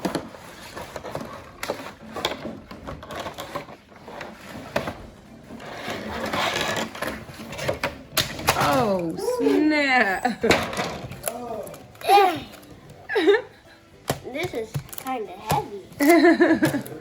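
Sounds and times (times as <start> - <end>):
packaging rustling and scraping: 0.0 - 8.1
plastic parts clicking and knocking: 0.0 - 8.8, 14.0 - 17.0.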